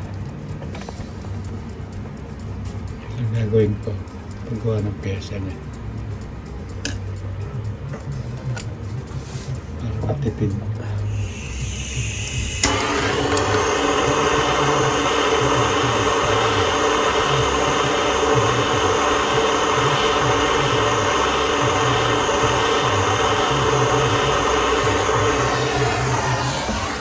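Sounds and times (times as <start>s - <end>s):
electric motor humming: 11.0s - 27.0s.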